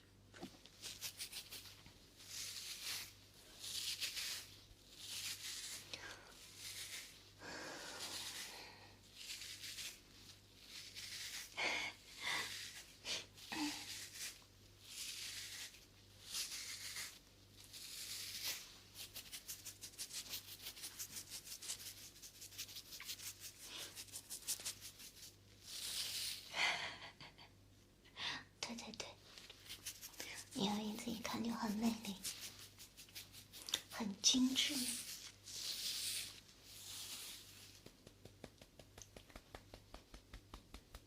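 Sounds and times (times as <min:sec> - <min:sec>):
rubbing and brushing strokes: 0:00.4 - 0:26.5, 0:29.2 - 0:41.0
light scratching strokes: 0:00.7 - 0:07.3, 0:09.1 - 0:11.6, 0:13.7 - 0:26.5, 0:29.3 - 0:41.0.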